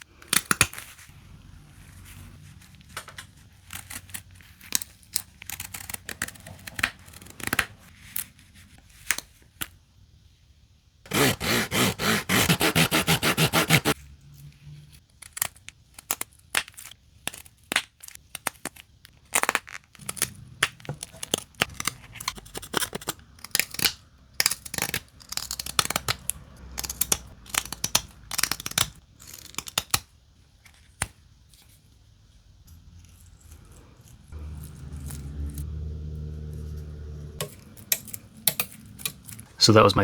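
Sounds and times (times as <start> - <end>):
knife whittling wood: 11.1 - 14.0.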